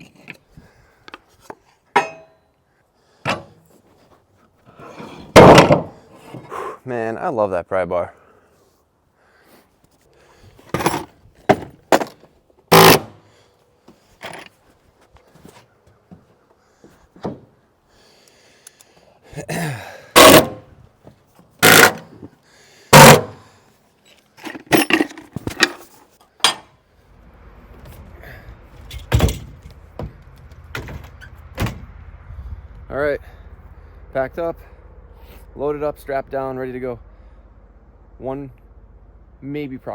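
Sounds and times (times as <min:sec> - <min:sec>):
loud bangs: 0:05.4 - 0:06.0, 0:12.7 - 0:13.2, 0:20.2 - 0:20.7, 0:21.6 - 0:22.1, 0:22.9 - 0:23.4
gear knocking and clanking: 0:21.6 - 0:22.2
low steady rumble: 0:26.8 - 0:39.9.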